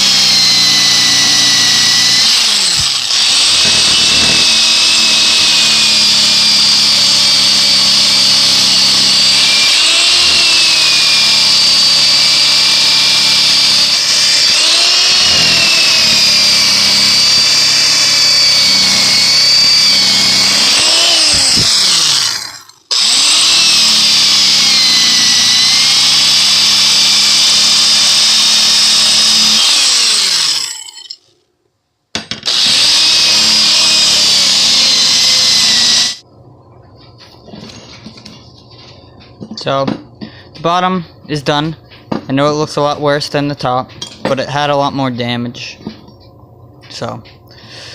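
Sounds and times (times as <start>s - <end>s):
drill wire brush scrubbing metal: 0.0s - 31.2s, 32.5s - 36.2s.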